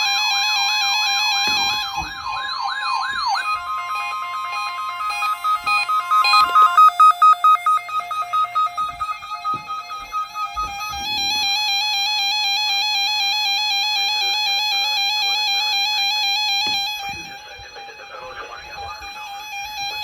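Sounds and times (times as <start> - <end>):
siren-like wailing sweep: 0.0 - 12.9
electronic synthesizer music: 1.0 - 11.7
pulsing high tones: 1.2 - 11.8.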